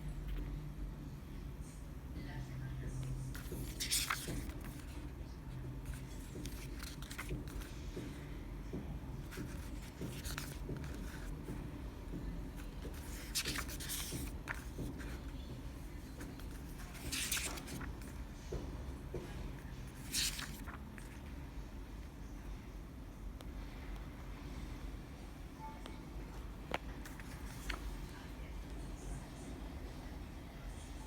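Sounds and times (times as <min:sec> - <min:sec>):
low steady hum: 0:00.0 - 0:31.0
packaging rustling and scraping: 0:12.6 - 0:15.4, 0:16.1 - 0:18.1.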